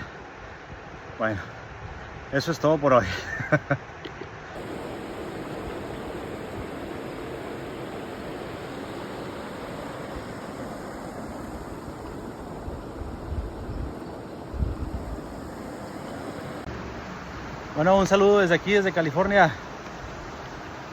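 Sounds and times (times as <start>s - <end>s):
wind thumps on microphone: 4.6s - 16.7s
river water rushing over rocks: 4.6s - 20.9s.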